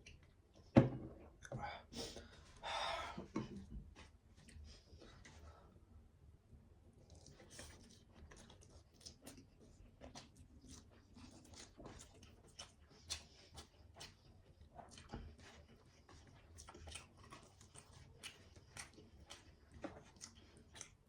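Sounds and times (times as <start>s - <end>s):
person chewing: 7.0s - 21.0s.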